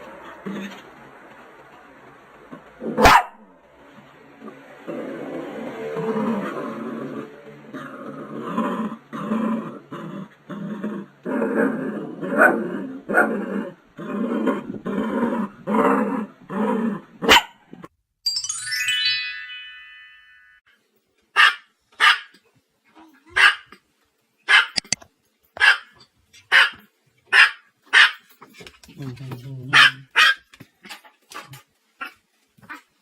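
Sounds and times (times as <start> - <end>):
dog growling and barking: 2.5 - 3.5, 4.4 - 17.9
small dog high-pitched barks: 3.0 - 3.4, 17.2 - 17.6, 21.4 - 22.4, 23.2 - 23.8, 24.5 - 24.9, 25.6 - 28.2, 29.7 - 30.5
short falling chime: 18.3 - 20.6.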